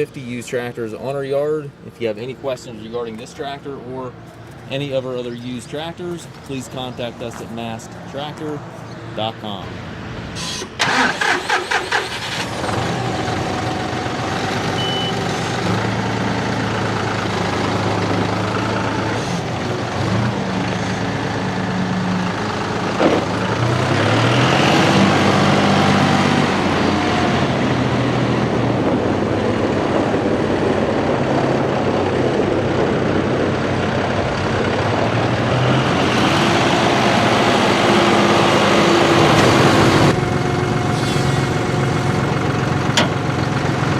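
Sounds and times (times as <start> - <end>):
diesel engine cranking and running: 10.4 - 43.9.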